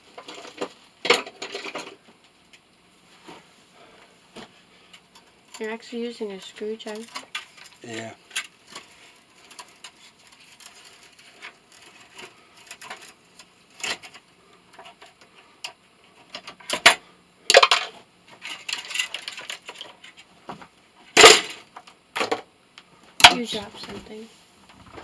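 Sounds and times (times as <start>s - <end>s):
metal parts clinking and scraping: 0.2s - 2.0s, 6.8s - 13.2s, 16.7s - 20.2s.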